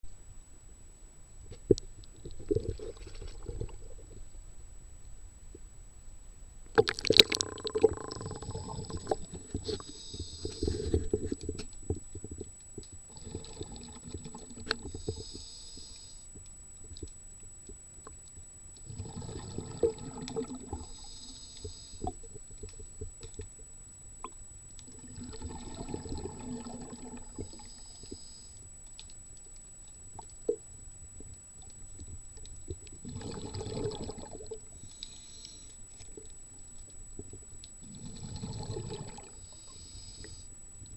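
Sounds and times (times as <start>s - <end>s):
exhaust bubbling underwater: 6.8s - 11.2s, 13.1s - 14.9s, 18.8s - 21.1s, 24.9s - 27.8s, 33.0s - 34.8s, 37.8s - 39.4s
regulator air hiss: 9.7s - 11.0s, 14.8s - 16.3s, 20.9s - 22.1s, 27.4s - 28.6s, 34.8s - 35.7s, 39.4s - 40.5s.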